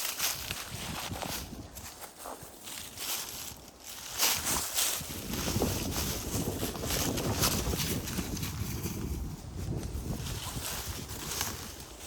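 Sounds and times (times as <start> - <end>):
footsteps on mountain path: 0.0 - 12.0
steady outdoor hiss: 0.0 - 12.0.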